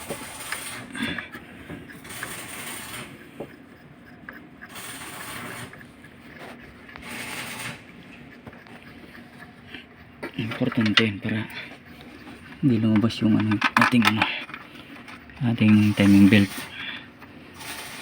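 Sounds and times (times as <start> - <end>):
ratchet wrench clicking: 1.8 - 11.5, 17.6 - 18.0.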